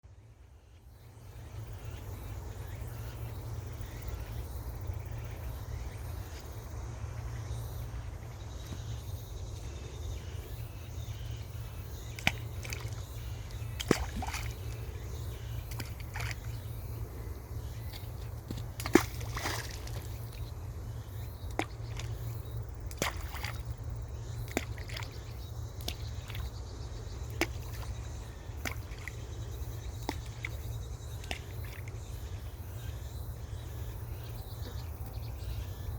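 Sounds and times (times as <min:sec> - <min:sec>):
stones plopping into water: 0:12.1 - 0:14.8, 0:15.7 - 0:16.5, 0:17.9 - 0:20.5, 0:22.9 - 0:23.7, 0:24.5 - 0:25.2, 0:25.8 - 0:26.5, 0:27.3 - 0:28.0, 0:28.6 - 0:29.2, 0:30.0 - 0:30.6.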